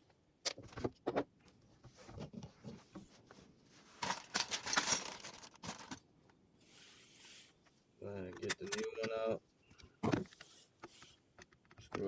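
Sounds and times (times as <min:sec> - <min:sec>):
rustling and scraping: 0:00.6 - 0:06.0.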